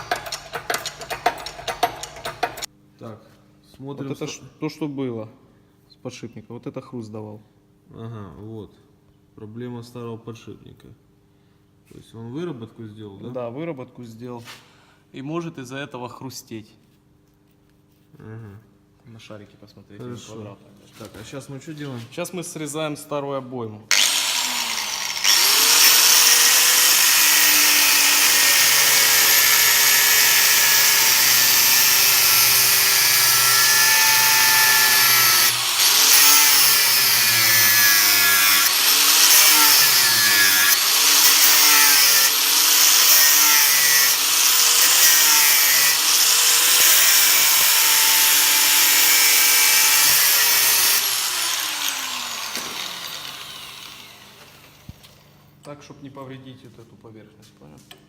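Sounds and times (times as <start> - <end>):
power grinder cutting metal: 23.9 - 55.3.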